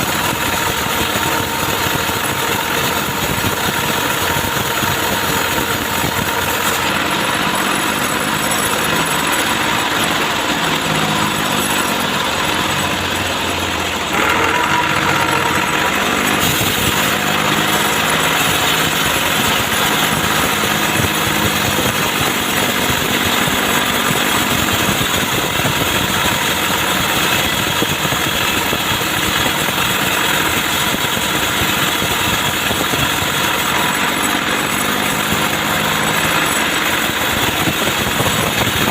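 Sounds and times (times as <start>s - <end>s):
chainsaw engine running: 0.0s - 38.9s.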